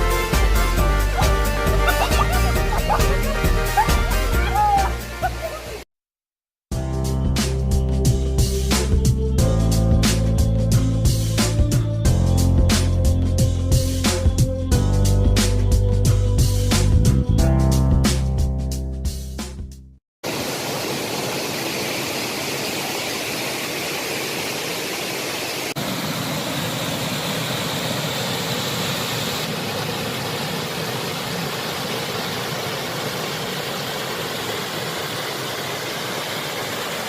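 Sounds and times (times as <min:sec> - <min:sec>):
stream rushing over rocks: 0:20.2 - 0:37.0.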